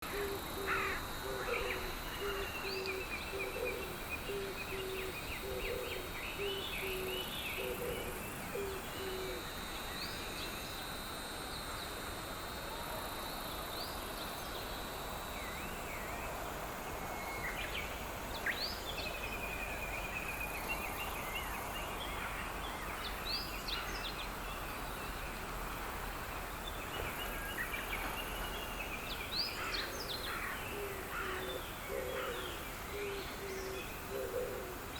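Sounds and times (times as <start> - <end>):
birds singing and chirping: 0.0 - 10.7, 15.3 - 34.9
bird hooting call: 0.1 - 9.4, 29.6 - 34.8.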